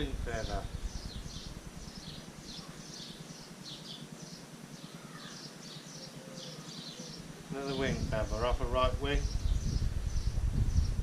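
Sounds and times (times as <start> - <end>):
bird chirping: 0.0 - 11.0
faint lower bird call: 0.8 - 8.5.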